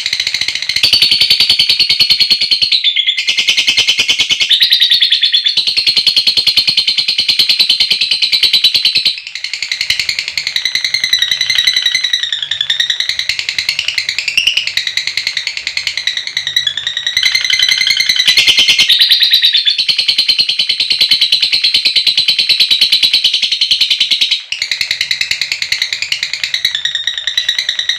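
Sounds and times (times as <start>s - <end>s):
lovebird chattering trill: 0.0s - 27.9s
warbling chirps: 9.2s - 27.9s.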